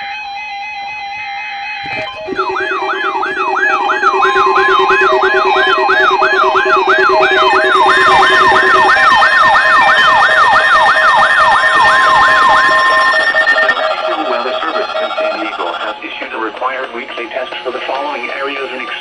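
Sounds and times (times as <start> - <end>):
low rapid beeping: 1.8 - 19.0
falling siren-like sweep: 1.9 - 16.0
steady high tone: 1.9 - 18.8.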